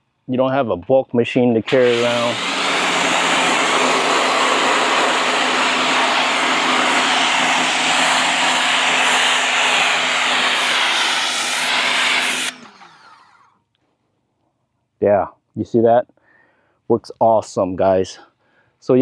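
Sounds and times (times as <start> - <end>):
pressure washer motor humming: 1.6 - 13.5
water jet spraying siding: 1.7 - 13.2.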